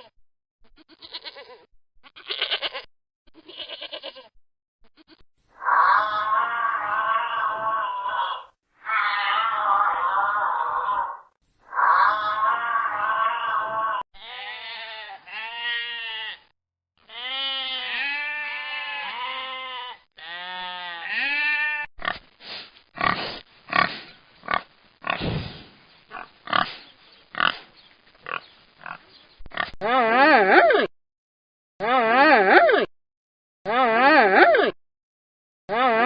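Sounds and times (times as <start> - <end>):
warbling animal call: 5.6 - 14.0
pig squealing: 5.6 - 16.2
pig grunting: 23.0 - 29.8.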